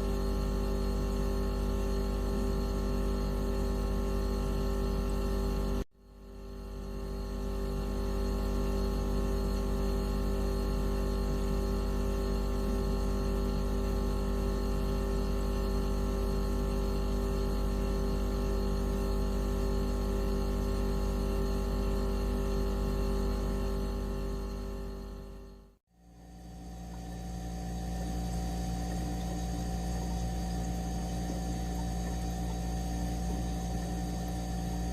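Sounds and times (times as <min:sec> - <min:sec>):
synthetic electronic hum: 0:12.6 - 0:34.9.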